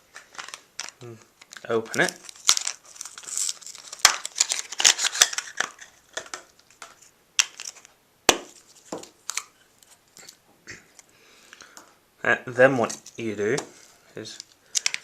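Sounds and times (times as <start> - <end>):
packaging crinkling and tearing: 0.1 - 7.9, 14.4 - 15.0.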